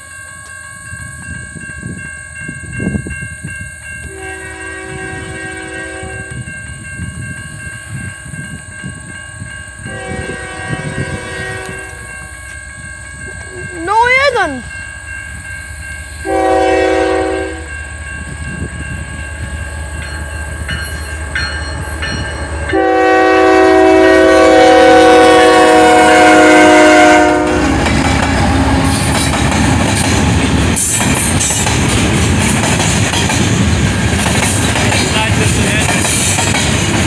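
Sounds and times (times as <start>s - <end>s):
train wheels on rail: 0.0s - 37.0s
locomotive horn blasts: 4.0s - 6.4s, 9.9s - 12.3s, 16.2s - 17.8s, 22.7s - 29.0s.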